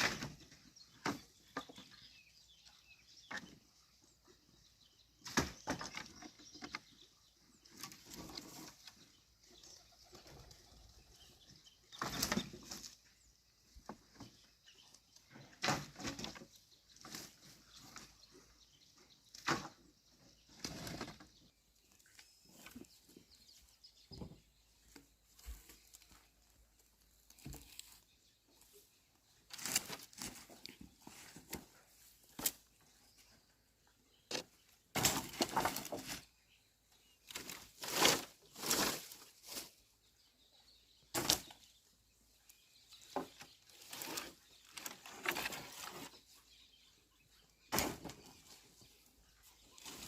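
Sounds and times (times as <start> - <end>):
rustling: 29.4 - 32.7, 37.3 - 39.9, 43.0 - 46.3.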